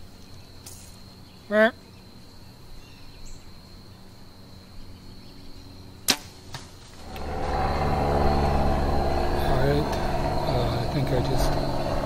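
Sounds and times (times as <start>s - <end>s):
bow releasing arrow: 6.1s - 7.0s
loud continuing noise: 7.0s - 12.0s.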